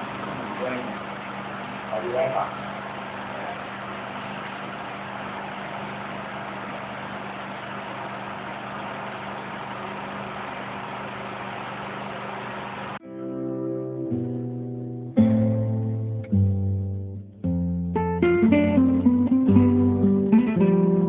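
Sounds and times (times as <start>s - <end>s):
low even hum: 0.0s - 13.0s
steady background hiss: 0.0s - 13.0s.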